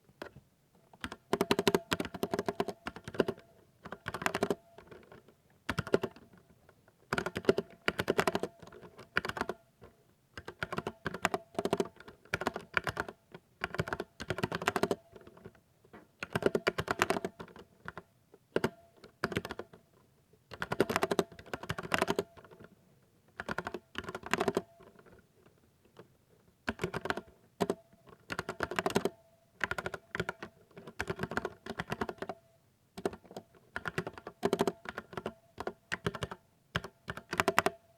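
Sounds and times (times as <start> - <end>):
mechanical keyboard typing: 1.0 - 5.0, 5.7 - 6.3, 7.1 - 9.6, 10.4 - 15.0, 16.2 - 18.0, 18.6 - 19.7, 20.5 - 22.6, 23.4 - 24.9, 26.7 - 32.4, 33.0 - 37.8.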